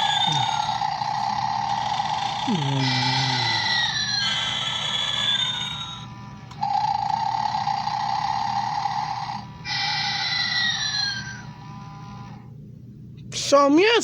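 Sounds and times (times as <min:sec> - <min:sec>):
toy speaker raspy snore: 0:00.0 - 0:06.0.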